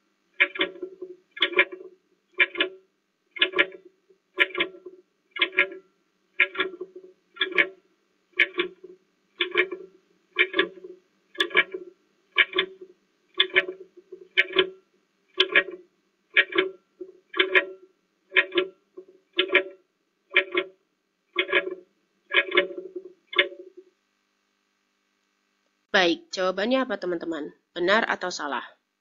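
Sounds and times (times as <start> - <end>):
clock ticking: 0.4 - 5.8, 6.4 - 7.8, 8.4 - 23.8.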